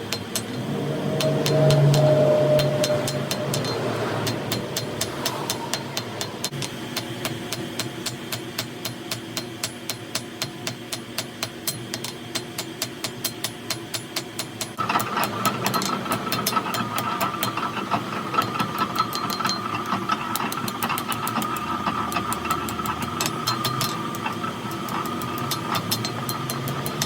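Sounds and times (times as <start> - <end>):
rapid clattering clicks: 11.6 - 27.0.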